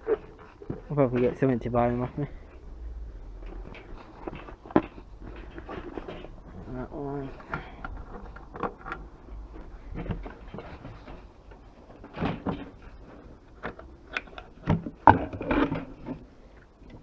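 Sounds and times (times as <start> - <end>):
items knocking and clunking: 0.0 - 17.0.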